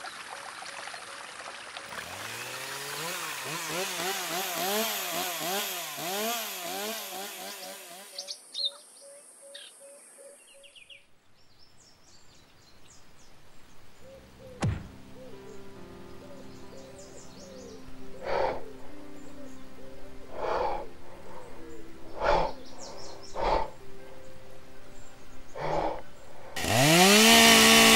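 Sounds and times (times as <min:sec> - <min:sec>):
chainsaw revving: 0:01.8 - 0:08.4, 0:26.6 - 0:27.9
birds chirping: 0:07.4 - 0:26.6.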